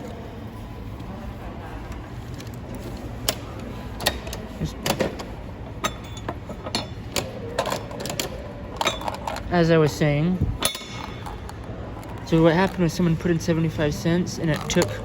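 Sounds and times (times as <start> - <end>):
steady low hum: 0.0 - 15.0
vending machine clicks and knocks: 3.2 - 9.6, 10.4 - 11.5.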